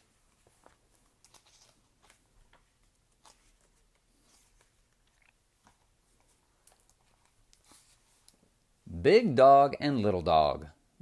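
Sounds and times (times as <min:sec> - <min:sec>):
soft rustles: 0:00.0 - 0:08.6.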